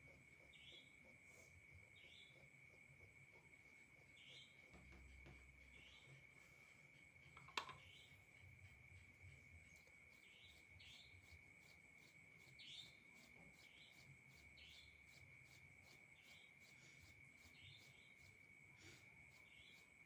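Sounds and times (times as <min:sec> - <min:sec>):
insect trilling: 0:07.5 - 0:20.0.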